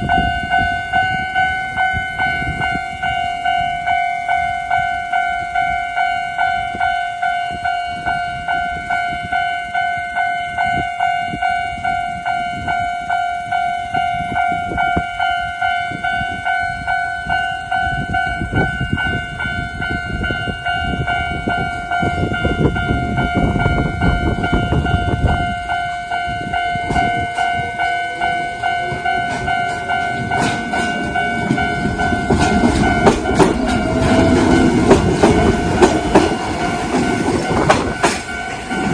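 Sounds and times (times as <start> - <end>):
level crossing warning bell: 0.0 - 38.9
train passing with rumble: 0.0 - 38.9
wheels clattering on rails: 13.9 - 38.9.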